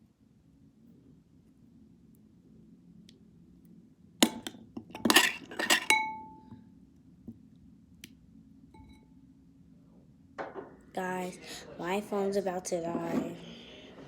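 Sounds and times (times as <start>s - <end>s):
hard objects clinking: 4.2s - 6.5s.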